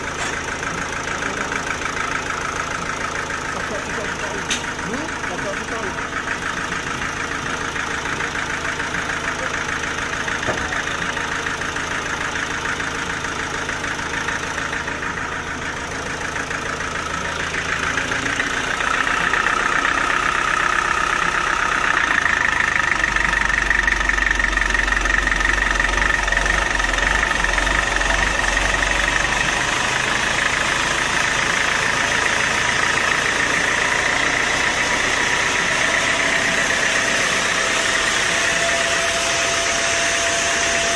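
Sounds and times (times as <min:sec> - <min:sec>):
sawmill machinery running: 0:00.0 - 0:40.9
steady high whine: 0:34.7 - 0:40.9.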